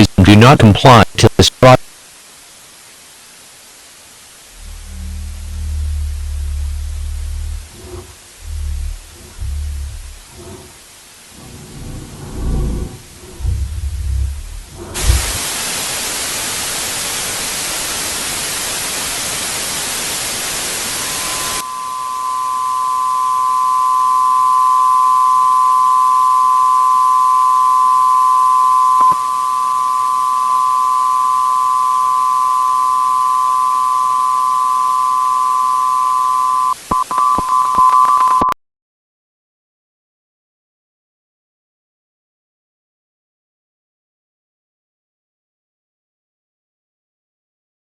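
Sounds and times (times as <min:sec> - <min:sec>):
static hiss: 0:00.0 - 0:38.5
electronic two-note tone: 0:04.5 - 0:10.3, 0:21.1 - 0:38.5.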